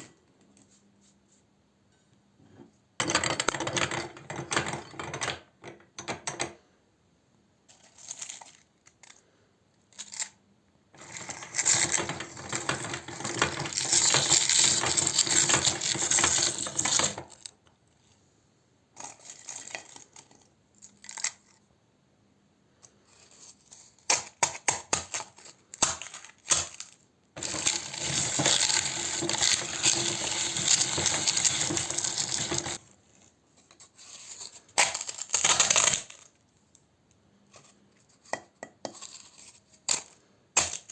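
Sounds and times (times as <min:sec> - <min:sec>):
meat grinder crunching cone: 0:11.0 - 0:17.3, 0:27.4 - 0:32.8
grinder clicks and knocks: 0:27.4 - 0:32.8.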